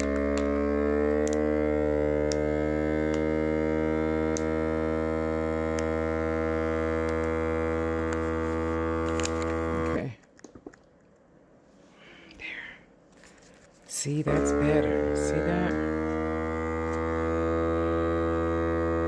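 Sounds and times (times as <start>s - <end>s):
vacuum sealer pump humming: 0.0s - 10.1s, 14.2s - 19.0s.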